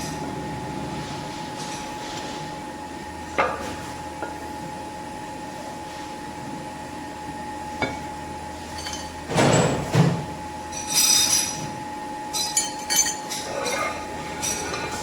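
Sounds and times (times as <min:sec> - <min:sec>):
ringing metallic clinks: 0:10.7 - 0:11.6, 0:12.3 - 0:14.9.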